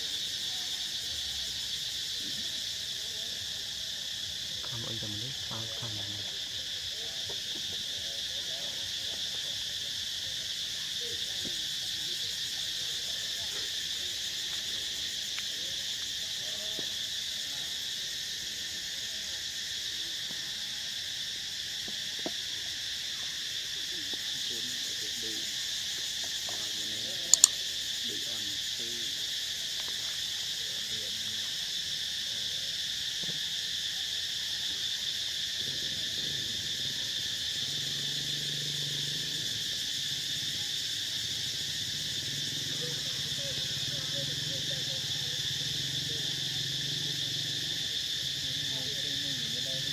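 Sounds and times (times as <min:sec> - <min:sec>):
insect chorus drone: 0:00.0 - 0:49.9
sharp double click: 0:27.4 - 0:27.6.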